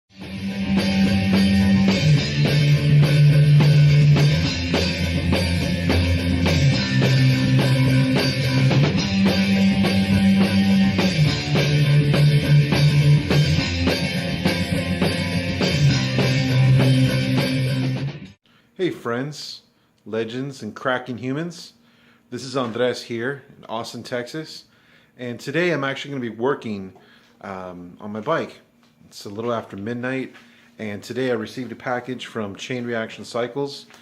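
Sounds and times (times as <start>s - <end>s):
punk rock song: 0.2s - 18.4s.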